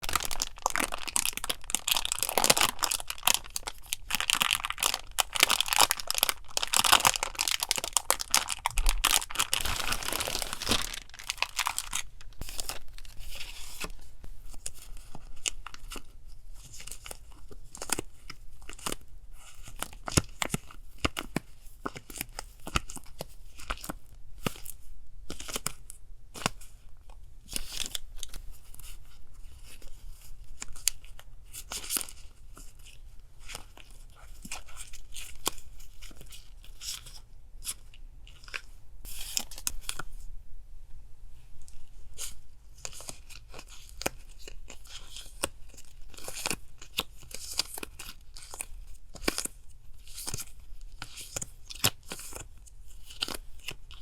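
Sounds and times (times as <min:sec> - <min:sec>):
paper and plastic rustling: 0:00.0 - 0:19.8.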